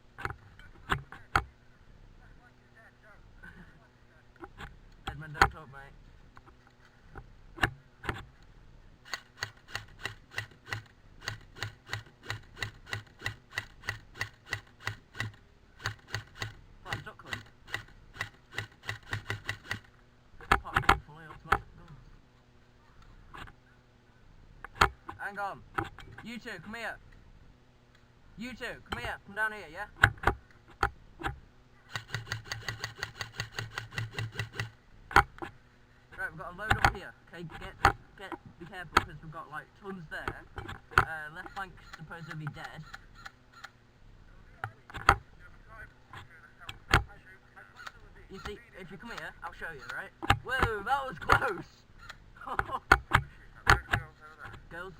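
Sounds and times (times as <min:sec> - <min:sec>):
camera rattling on helmet: 0:09.0 - 0:21.6, 0:30.0 - 0:35.6
sharp click: 0:09.0 - 0:21.6.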